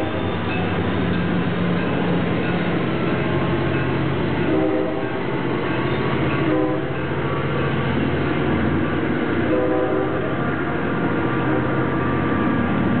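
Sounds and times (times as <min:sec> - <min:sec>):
diesel locomotive engine under load: 0:00.0 - 0:13.0
locomotive horn blasts: 0:04.4 - 0:05.2, 0:06.4 - 0:07.0, 0:09.5 - 0:10.3.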